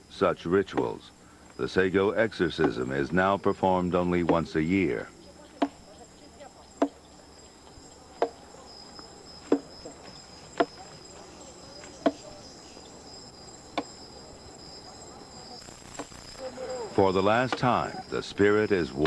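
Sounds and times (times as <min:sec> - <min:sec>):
high-pitched insect buzzing: 0:05.2 - 0:17.2.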